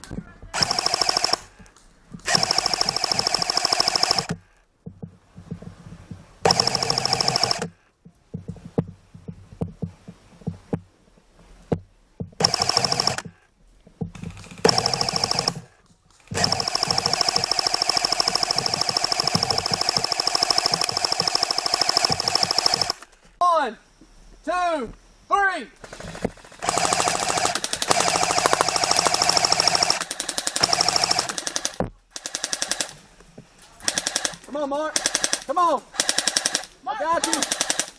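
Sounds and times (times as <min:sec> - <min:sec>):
toy gun firing full auto: 0:00.6 - 0:01.5, 0:02.3 - 0:04.4, 0:06.5 - 0:07.7, 0:12.4 - 0:13.3, 0:14.7 - 0:15.6, 0:16.4 - 0:23.0, 0:26.6 - 0:33.0, 0:33.8 - 0:34.4, 0:35.0 - 0:37.9.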